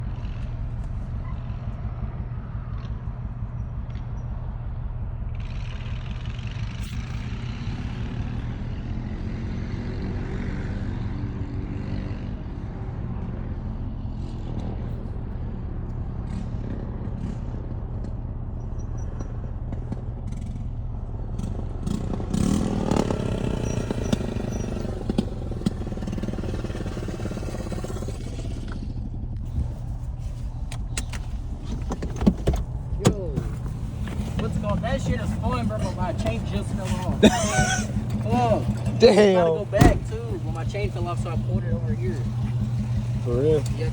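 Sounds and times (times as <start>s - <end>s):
misfiring engine revving: 21.4s - 43.9s
sharp engine clatters: 30.4s - 43.9s.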